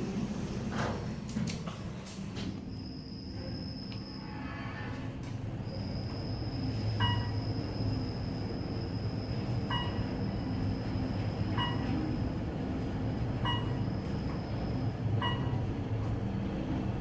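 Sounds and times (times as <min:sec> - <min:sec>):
elevator humming and whining: 0:00.0 - 0:17.0
short electronic beep: 0:07.0 - 0:07.5, 0:15.2 - 0:15.6.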